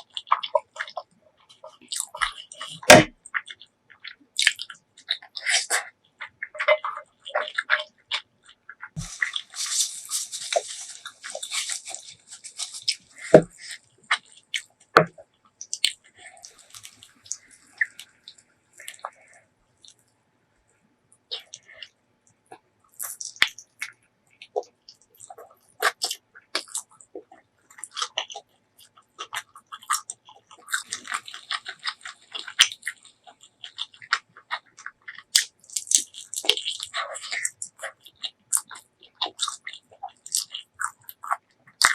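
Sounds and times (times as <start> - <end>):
crunchy chewing: 0.0 - 20.1, 21.1 - 41.9.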